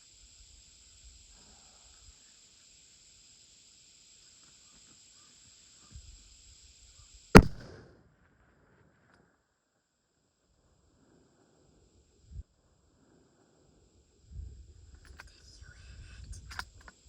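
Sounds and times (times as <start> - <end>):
rifle shot with echo: 7.4 - 7.9.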